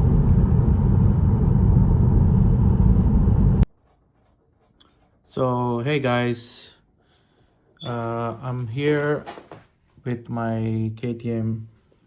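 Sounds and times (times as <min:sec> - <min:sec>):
loud motor vehicle rumble: 0:00.0 - 0:03.7.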